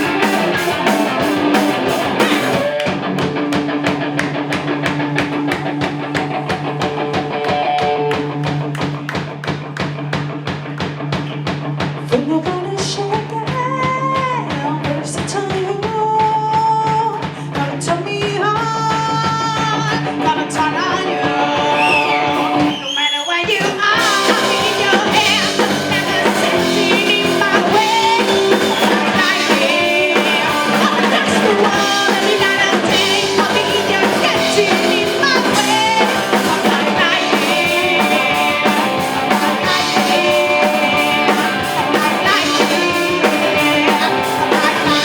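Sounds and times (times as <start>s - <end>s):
electric guitar: 0.0s - 15.4s, 16.0s - 23.0s, 23.6s - 45.0s
driving drum beat: 0.0s - 45.0s.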